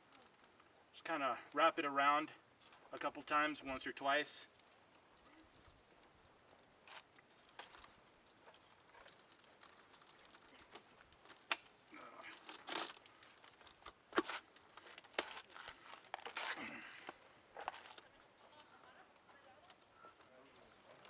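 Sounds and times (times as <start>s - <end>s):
chain links clinking: 2.3s - 3.0s, 4.5s - 15.7s, 19.4s - 21.0s.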